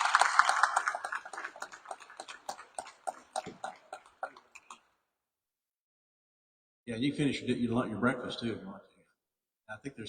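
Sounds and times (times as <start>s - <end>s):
audience applause: 0.0s - 4.8s.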